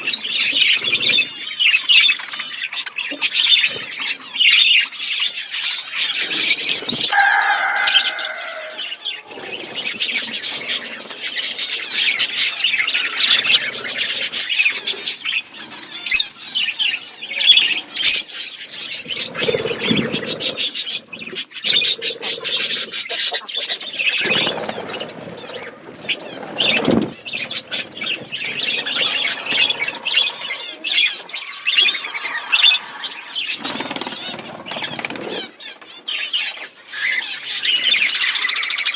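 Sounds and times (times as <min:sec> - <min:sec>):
budgerigar squawk: 0:00.0 - 0:19.2
budgerigars chattering and chirping: 0:00.0 - 0:38.9.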